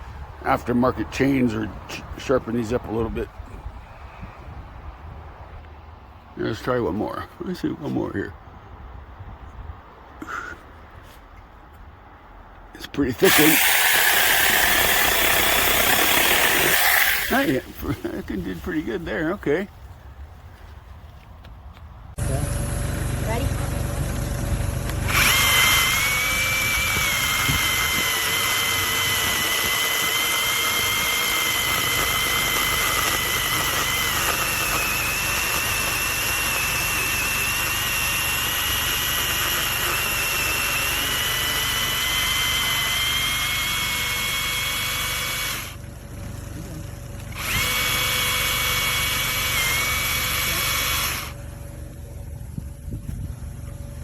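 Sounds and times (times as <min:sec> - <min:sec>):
electric chainsaw motor whining: 0:13.2 - 0:18.0, 0:24.0 - 0:45.8, 0:47.2 - 0:51.4.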